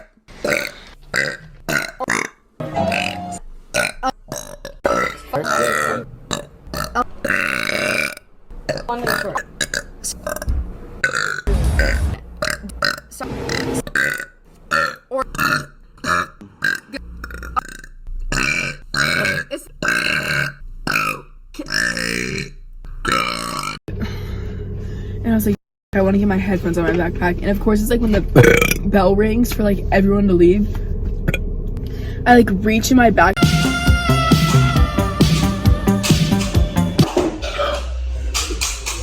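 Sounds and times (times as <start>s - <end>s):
people burping: 0.5s - 10.5s, 28.4s - 28.8s, 36.9s - 38.0s.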